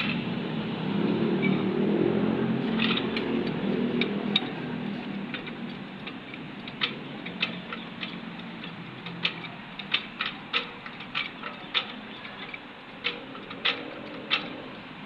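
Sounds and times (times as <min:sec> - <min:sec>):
rhythmic clicking: 0:02.5 - 0:15.0.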